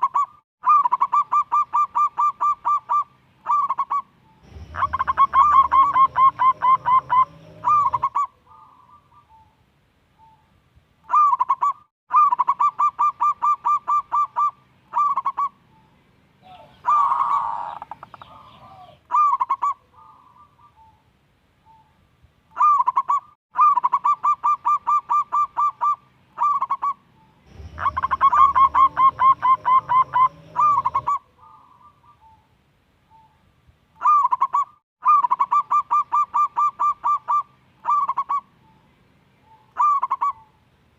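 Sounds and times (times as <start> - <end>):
dove cooing: 0.0 - 9.6, 11.1 - 21.0, 22.6 - 32.5, 34.0 - 38.8, 39.4 - 40.6
brief rough noise: 4.4 - 5.7, 27.4 - 29.3.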